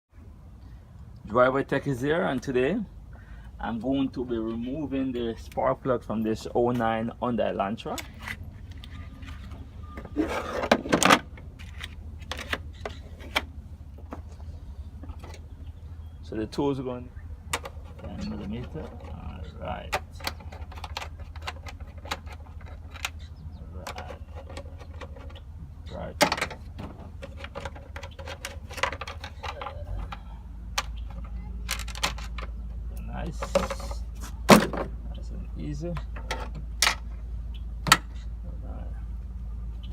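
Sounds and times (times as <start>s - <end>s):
steady low hum: 0.1s - 39.9s
hand tools clicking and clanking: 17.5s - 34.9s, 35.8s - 37.2s
rattling clatter: 26.2s - 32.6s.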